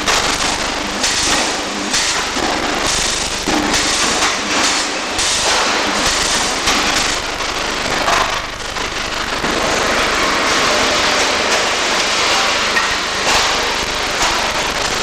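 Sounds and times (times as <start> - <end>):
arc welding crackling hiss: 0.0 - 15.0.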